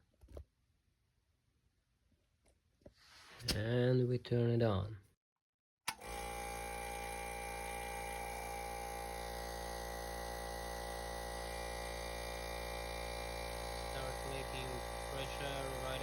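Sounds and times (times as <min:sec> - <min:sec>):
air compressor running: 0:05.9 - 0:16.0.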